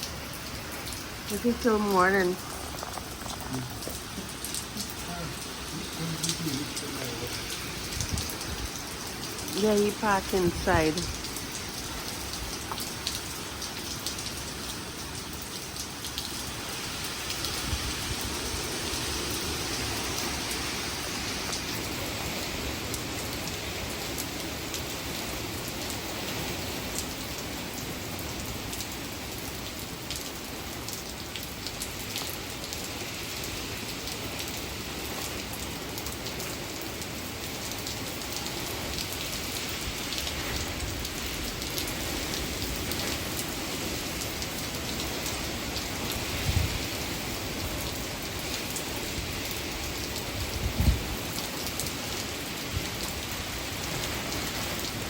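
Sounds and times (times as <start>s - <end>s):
sharp raindrop hits: 0.0s - 15.2s
heavy rain falling: 0.0s - 55.0s.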